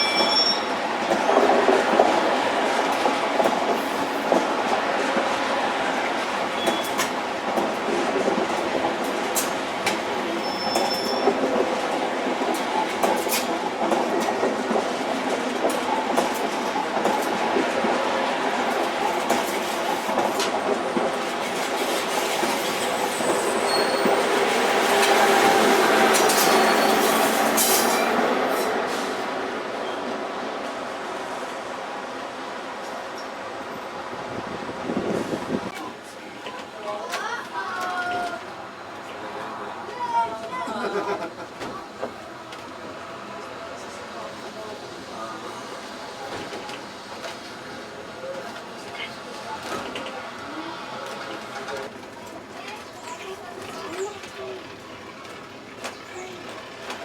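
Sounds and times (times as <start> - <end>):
high wheel squeals: 0.0 - 0.8, 10.3 - 11.4, 22.6 - 24.3, 25.4 - 28.1
rail vehicle rumbling on track: 0.0 - 57.0.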